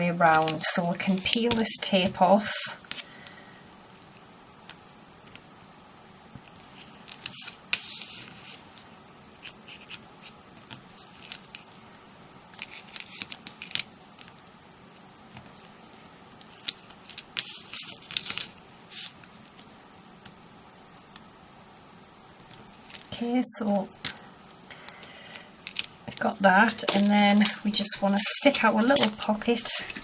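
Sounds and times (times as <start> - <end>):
tape liner peeling crackly: 9.4 - 14.5.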